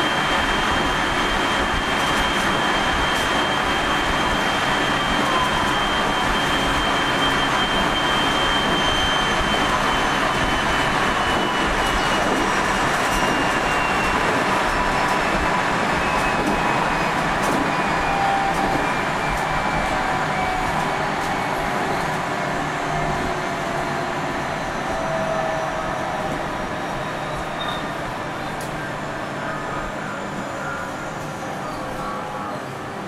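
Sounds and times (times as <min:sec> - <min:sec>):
train wheel and rail noise: 0:00.0 - 0:33.0.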